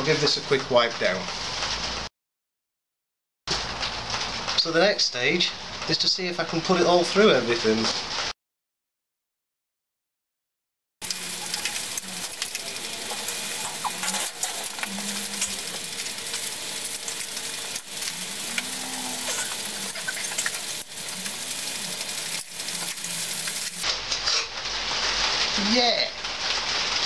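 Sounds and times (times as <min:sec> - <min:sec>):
crackling hiss: 0:11.0 - 0:27.0.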